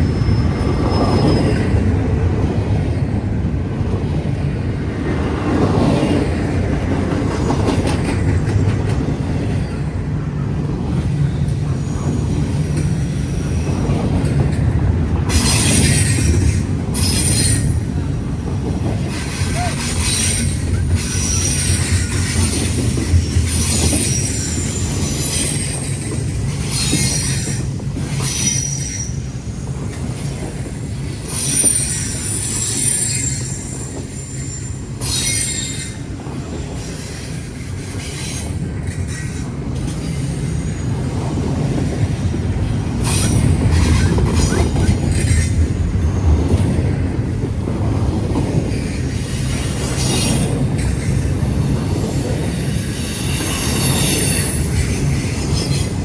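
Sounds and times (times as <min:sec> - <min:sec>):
wheel squeal: 0:00.0 - 0:01.9, 0:15.4 - 0:17.8, 0:19.1 - 0:37.1, 0:37.9 - 0:42.0, 0:49.4 - 0:56.0
train wheels rumbling on rail: 0:00.0 - 0:56.0.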